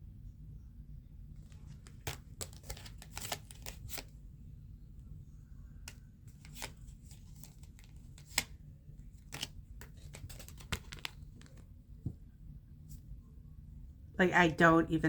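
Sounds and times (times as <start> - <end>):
low steady hum: 0.0 - 15.0
cards snapping and tapping: 1.6 - 4.1, 5.8 - 8.6, 9.2 - 11.6.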